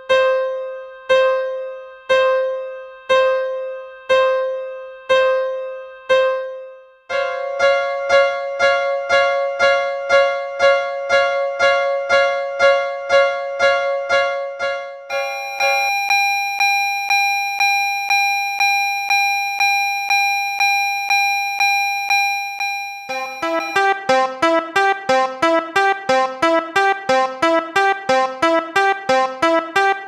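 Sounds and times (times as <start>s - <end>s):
railroad crossing warning bell: 15.1s - 17.1s, 22.6s - 23.9s.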